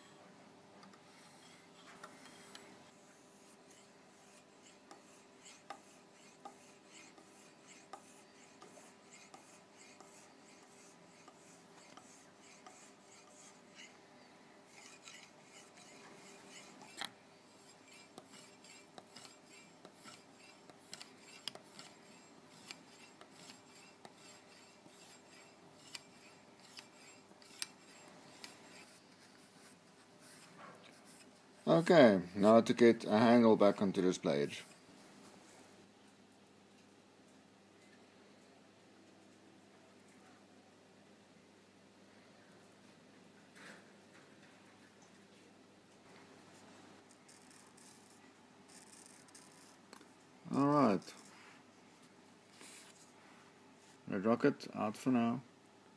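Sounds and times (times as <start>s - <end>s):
sharpening rod scraping knife: 3.1s - 14.0s, 14.7s - 29.0s, 47.3s - 49.8s.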